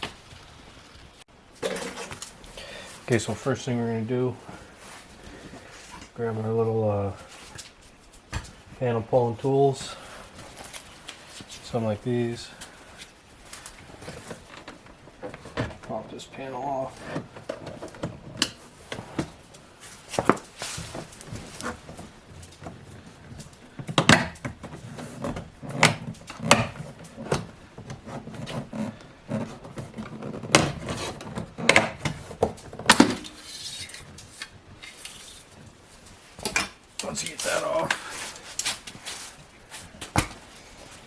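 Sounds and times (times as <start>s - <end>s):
tools scraping plastic panel: 24.0s - 35.5s.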